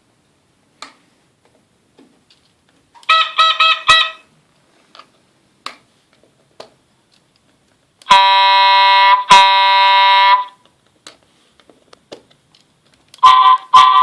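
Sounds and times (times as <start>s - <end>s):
buzzy electronic horn blasts: 3.0s - 4.3s, 8.1s - 10.6s, 13.2s - 14.0s.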